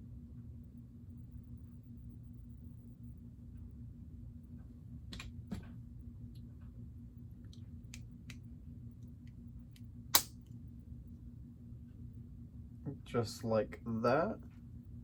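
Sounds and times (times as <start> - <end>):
loud snap of plastic piece: 10.1 - 10.5.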